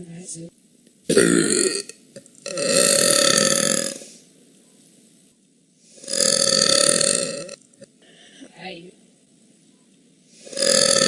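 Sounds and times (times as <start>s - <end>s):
woman burping: 1.1s - 4.0s.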